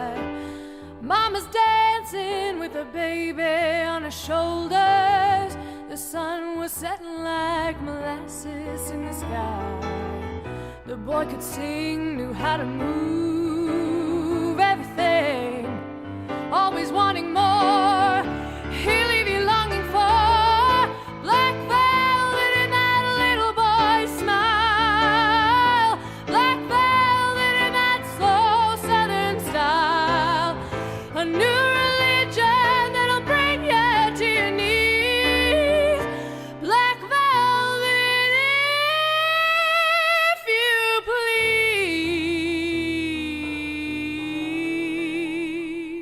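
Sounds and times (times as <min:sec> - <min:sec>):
woman singing with vibrato: 0:10.9 - 0:15.8, 0:16.4 - 0:46.0.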